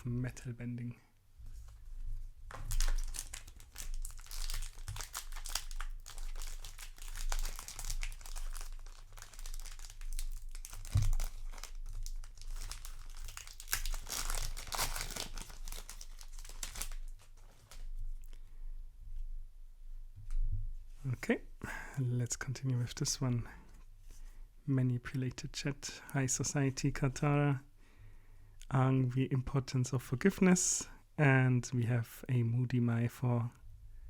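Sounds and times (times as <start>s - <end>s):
wrapper crinkling and tearing: 2.5s - 18.0s.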